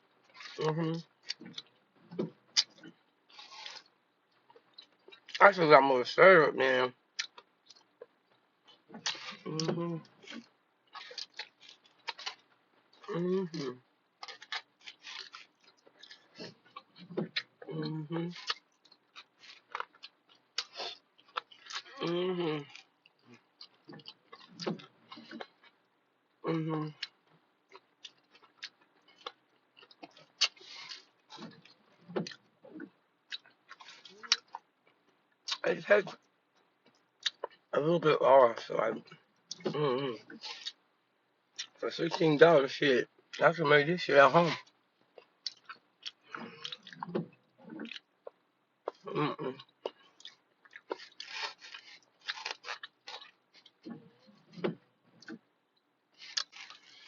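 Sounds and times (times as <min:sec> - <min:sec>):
close-miked chewing: 0:07.2 - 0:25.7, 0:26.9 - 0:34.6, 0:44.4 - 0:55.4, 0:56.1 - 0:57.0.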